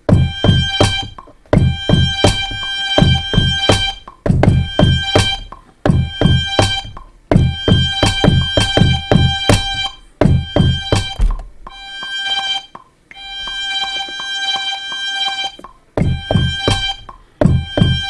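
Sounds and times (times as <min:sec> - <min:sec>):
kick drum hits: 0:00.0 - 0:11.8, 0:16.0 - 0:18.0.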